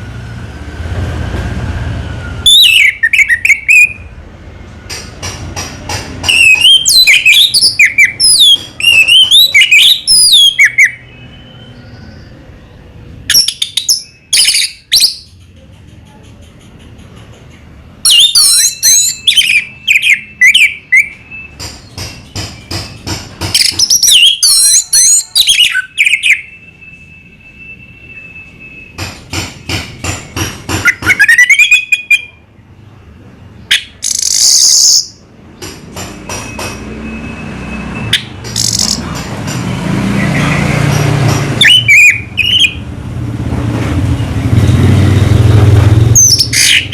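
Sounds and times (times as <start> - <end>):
thrush singing whistles: 2.0 - 4.2, 6.2 - 12.4, 13.3 - 15.3, 18.0 - 32.4, 33.7 - 35.2, 41.6 - 42.9, 46.2 - 46.9.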